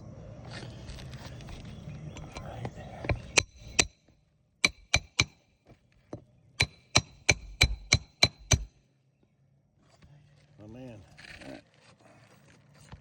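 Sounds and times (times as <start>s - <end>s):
hammer striking metal: 3.4s - 4.0s, 4.6s - 5.4s, 6.6s - 8.8s.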